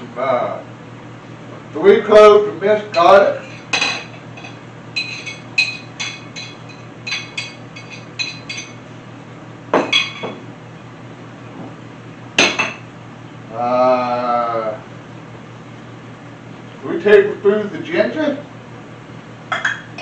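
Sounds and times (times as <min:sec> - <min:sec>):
spoon clinking against glass: 0:03.0 - 0:08.8, 0:09.8 - 0:10.4.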